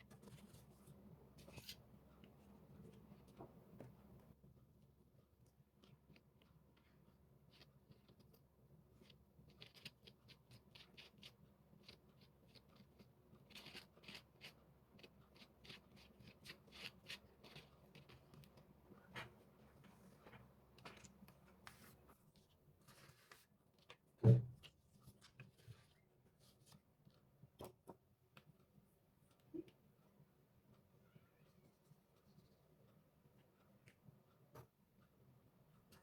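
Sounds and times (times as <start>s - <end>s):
paper scratching and rustling: 20.9s - 23.5s.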